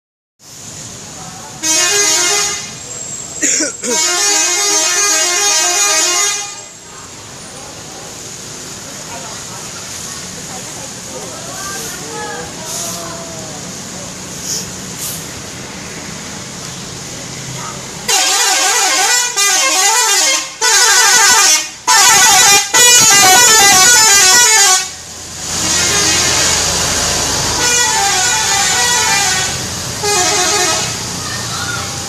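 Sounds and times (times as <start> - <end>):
multi-tone musical bus horn: 1.6 - 2.8, 3.4 - 6.8, 18.0 - 31.2.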